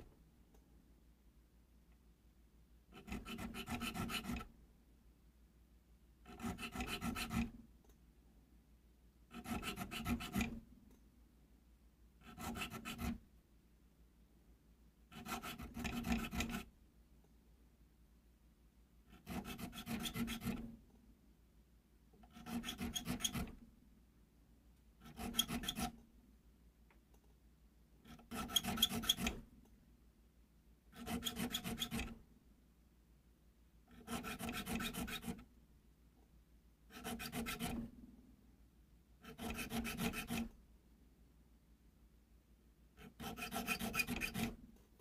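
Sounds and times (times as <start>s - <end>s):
needle file rasping metal: 2.9s - 4.5s, 6.2s - 7.6s, 9.3s - 10.6s, 12.2s - 13.2s, 15.1s - 16.7s, 19.1s - 20.7s, 22.2s - 23.6s, 25.0s - 26.0s, 28.0s - 29.4s, 30.9s - 32.2s, 33.9s - 35.4s, 36.9s - 37.9s, 39.2s - 40.5s, 43.0s - 44.6s.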